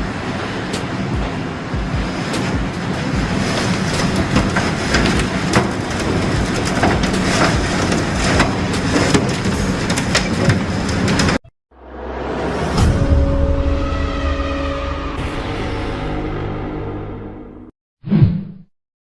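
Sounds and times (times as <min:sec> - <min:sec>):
clattering knocks: 0:01.2 - 0:11.4.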